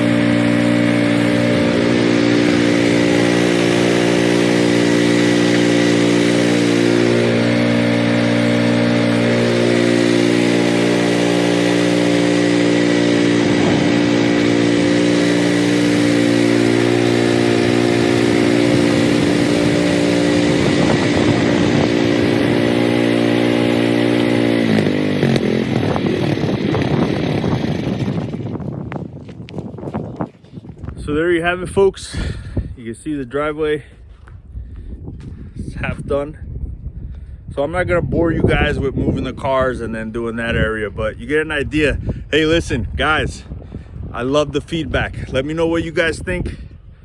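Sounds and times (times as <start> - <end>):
snowblower engine running: 0.0 - 30.6.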